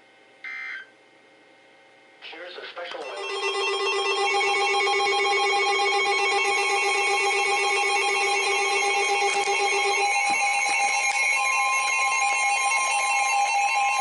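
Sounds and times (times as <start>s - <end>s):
warbling electronic alarm tone: 3.0s - 14.0s.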